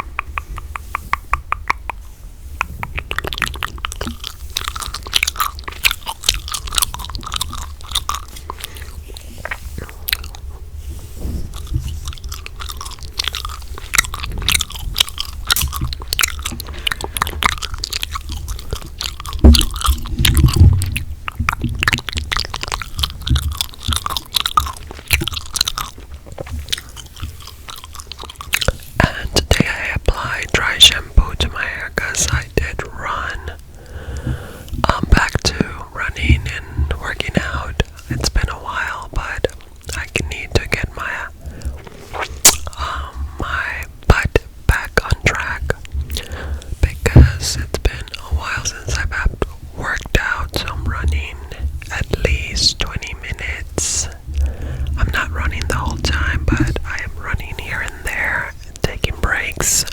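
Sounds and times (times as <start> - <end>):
gum chewing wet clicks: 0.0 - 10.7, 11.4 - 59.9.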